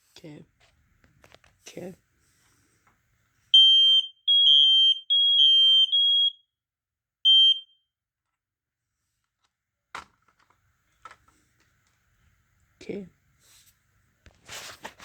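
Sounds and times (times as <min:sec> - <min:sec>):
smoke alarm beeps: 0:03.5 - 0:06.5, 0:07.2 - 0:07.9.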